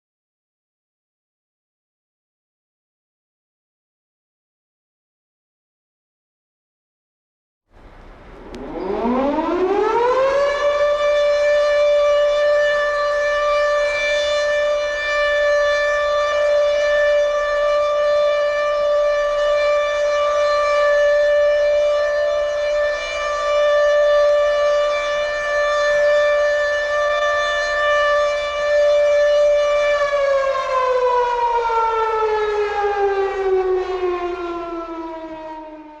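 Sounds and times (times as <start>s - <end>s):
air-raid siren winding: 8.4s - 10.8s.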